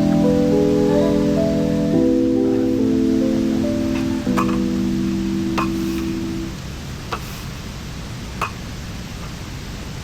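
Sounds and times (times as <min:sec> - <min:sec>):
soft sustained chords: 0:00.0 - 0:06.6.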